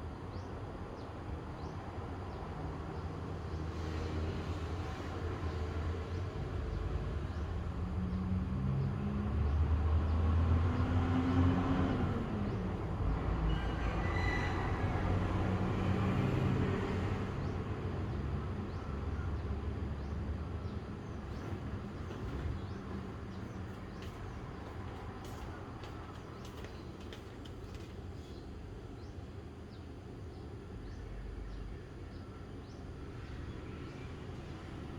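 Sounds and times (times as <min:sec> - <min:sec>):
vehicle engine passing by: 0:08.6 - 0:12.6.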